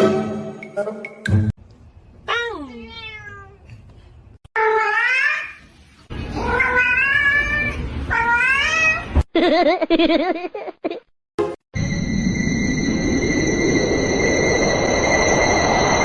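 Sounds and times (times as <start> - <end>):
cat meowing: 2.8 - 3.6, 6.3 - 9.1.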